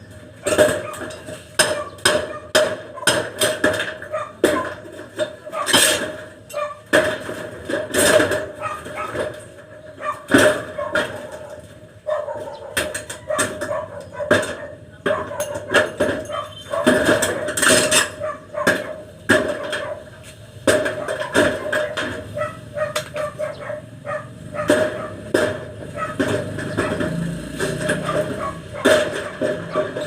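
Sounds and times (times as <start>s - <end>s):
dog barking: 0.4s - 3.4s, 4.0s - 4.7s, 5.4s - 5.8s, 6.5s - 6.9s, 8.5s - 9.3s, 10.0s - 20.2s, 20.8s - 25.3s, 25.9s - 27.1s, 28.0s - 30.0s.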